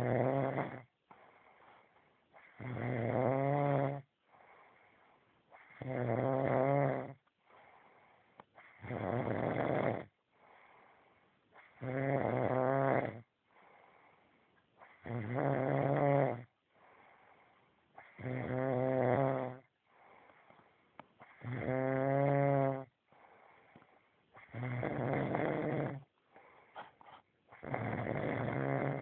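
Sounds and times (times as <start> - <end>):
man snoring loudly: 0.0 - 0.9, 2.6 - 4.0, 5.7 - 7.2, 8.8 - 10.1, 11.8 - 13.2, 15.0 - 16.5, 18.2 - 19.6, 21.4 - 22.9, 24.5 - 26.0, 27.6 - 29.0
quiet breathing: 0.8 - 2.8, 3.9 - 5.9, 7.1 - 8.9, 10.0 - 11.8, 13.2 - 15.1, 16.5 - 18.3, 19.5 - 21.6, 22.8 - 29.0.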